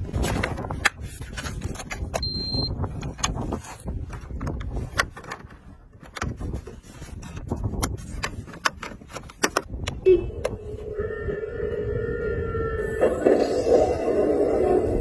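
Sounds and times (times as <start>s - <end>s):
low rumble: 9.9s - 15.0s.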